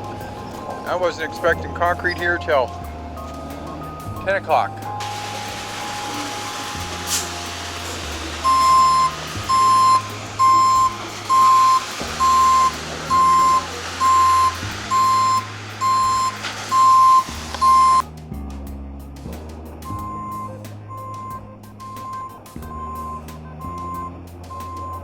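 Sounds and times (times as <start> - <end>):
truck engine running: 0.0 - 25.0
reversing alarm beeping: 0.8 - 18.0, 19.8 - 25.0.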